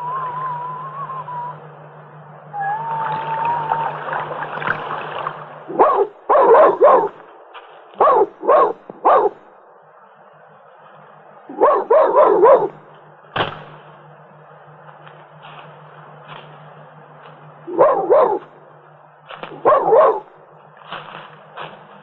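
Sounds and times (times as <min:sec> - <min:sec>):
dog barking: 0:05.7 - 0:07.2, 0:08.0 - 0:09.5, 0:11.5 - 0:12.8, 0:17.7 - 0:18.5, 0:19.5 - 0:20.4.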